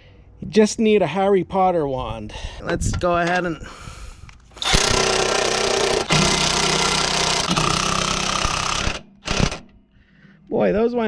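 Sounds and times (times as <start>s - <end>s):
power driver running fasteners: 4.5s - 9.8s.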